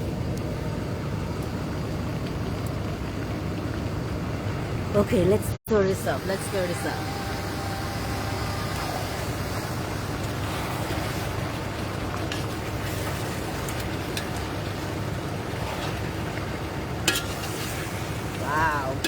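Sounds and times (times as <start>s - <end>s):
chicken sizzling in a pot: 6.0s - 19.0s.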